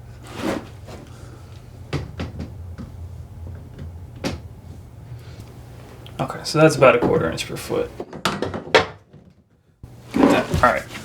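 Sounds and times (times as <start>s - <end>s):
low steady hum: 0.0s - 8.1s.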